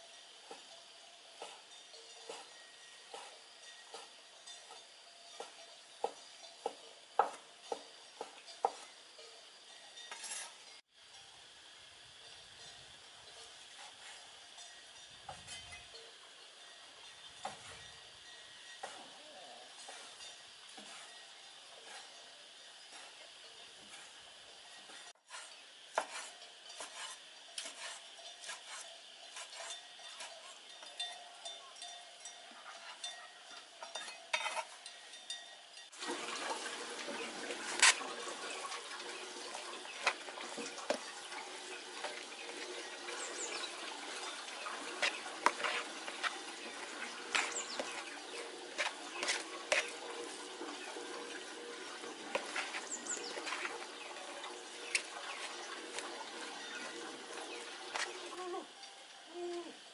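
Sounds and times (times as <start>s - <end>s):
utensils clinking against dishes: 0.0s - 10.8s, 12.3s - 59.2s
steady hiss: 0.0s - 59.9s.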